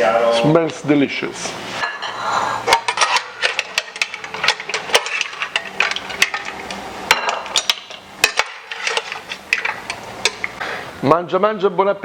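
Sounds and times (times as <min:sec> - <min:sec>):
utensils and dishes clicking: 0:01.8 - 0:10.6.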